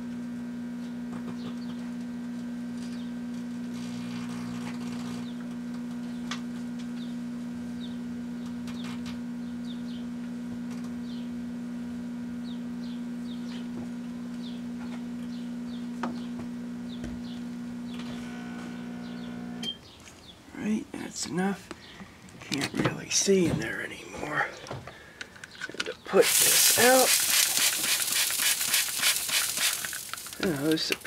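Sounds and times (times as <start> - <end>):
microwave oven humming: 0.0 - 31.0
sharp crackles and pops: 25.5 - 31.0.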